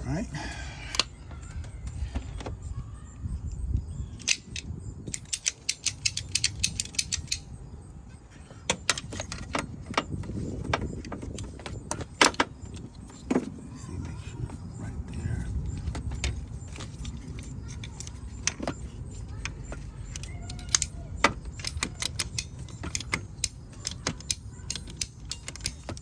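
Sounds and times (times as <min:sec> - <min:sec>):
hand tools clicking and rattling: 0:04.2 - 0:07.6, 0:08.7 - 0:26.0.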